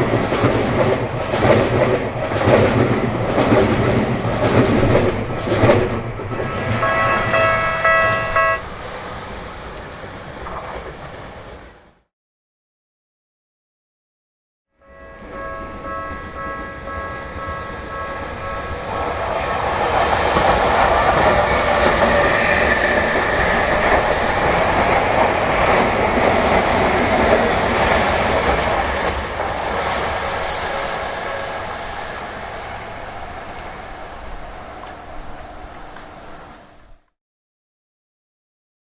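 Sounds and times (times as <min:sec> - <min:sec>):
electric train passing: 0:00.0 - 0:12.0, 0:14.8 - 0:37.0
high wheel squeals: 0:06.4 - 0:08.7, 0:29.7 - 0:34.5
crossing warning bell ringing: 0:06.4 - 0:08.8, 0:14.8 - 0:20.1, 0:30.3 - 0:32.7.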